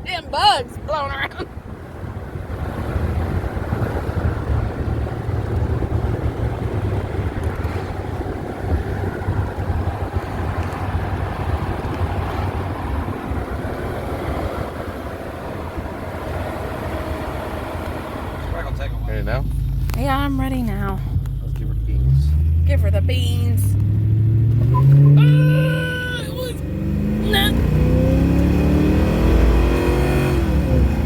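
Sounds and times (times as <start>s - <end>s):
wind rushing over microphone: 0.0s - 21.4s
car engine rumbling: 0.0s - 31.0s.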